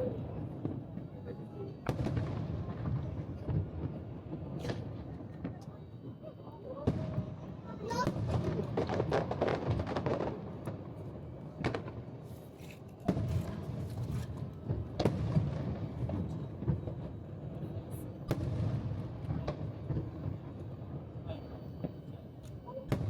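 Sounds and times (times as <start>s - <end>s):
firework booms: 1.8s - 5.6s, 6.8s - 12.2s, 13.1s - 17.6s, 18.2s - 22.0s
firework crackling: 7.1s - 22.0s.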